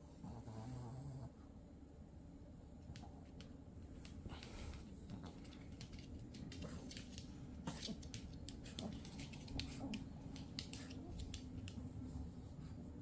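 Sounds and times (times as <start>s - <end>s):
dog snoring: 0.2s - 1.4s.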